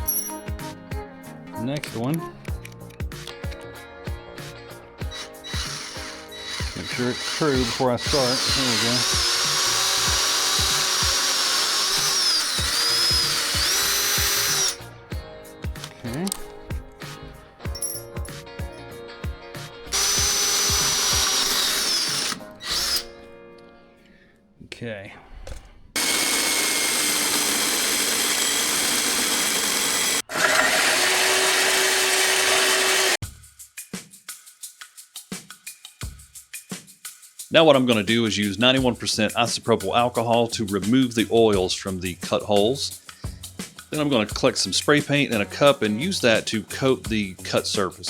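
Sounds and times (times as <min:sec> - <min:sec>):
electric drill boring steel: 0:05.0 - 0:14.8, 0:19.9 - 0:23.1, 0:26.0 - 0:33.2.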